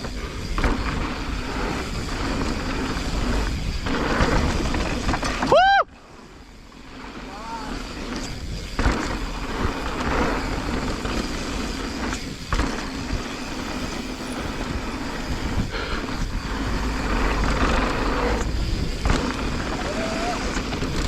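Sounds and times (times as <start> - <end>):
bike tyres crunching on dirt: 0.0 - 21.0
wind buffeting microphone: 0.0 - 21.0
bike knocking over bumps: 8.2 - 13.6.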